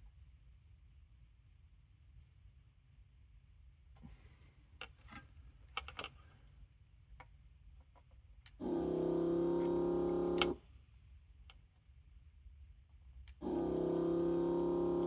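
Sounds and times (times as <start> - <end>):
desoldering pump buzzing: 8.6 - 10.6, 13.4 - 15.0.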